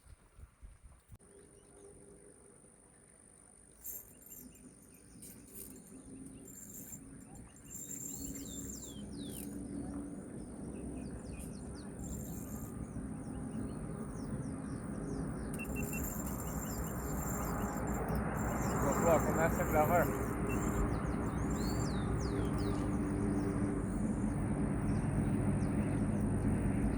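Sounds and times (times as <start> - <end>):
high-pitched insect buzz: 3.8 - 9.6, 11.4 - 12.8, 15.6 - 23.0
birds chirping: 3.8 - 26.0.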